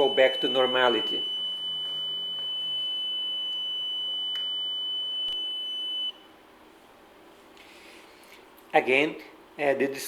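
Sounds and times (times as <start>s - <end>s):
alarm buzzer high-pitched tone: 0.0s - 6.2s.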